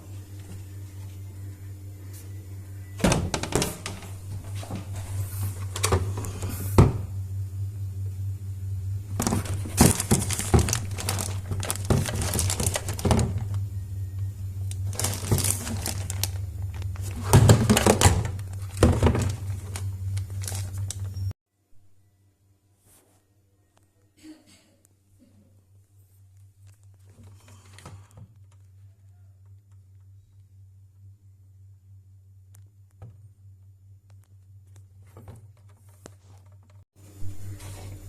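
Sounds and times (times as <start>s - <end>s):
spin dryer humming: 0.0s - 21.3s
dryer knocking and clattering: 3.0s - 5.0s, 9.1s - 13.6s, 17.0s - 19.8s.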